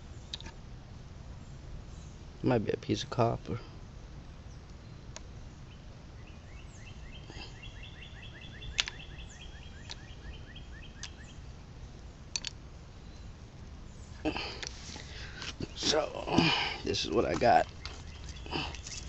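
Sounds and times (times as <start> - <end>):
bird trilling: 6.3 - 11.5, 14.1 - 19.0
sharp clicks: 8.8 - 9.0, 12.3 - 12.6.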